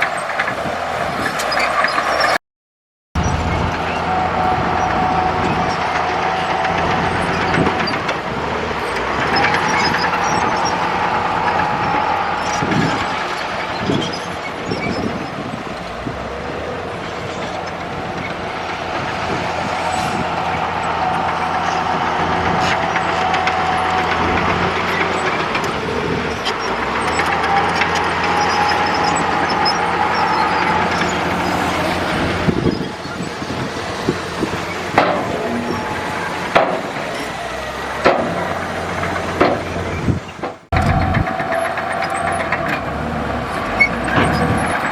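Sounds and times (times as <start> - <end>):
bulldozer diesel engine running: 3.2 - 44.9
sharp knocks: 36.4 - 37.1.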